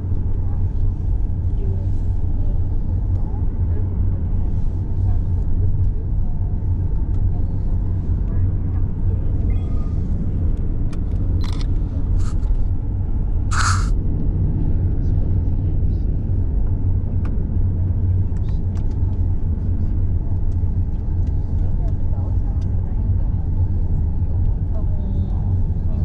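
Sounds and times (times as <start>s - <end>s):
vehicle engine and tyres rumbling: 0.0s - 26.0s
short hisses: 12.2s - 12.5s, 13.5s - 13.9s.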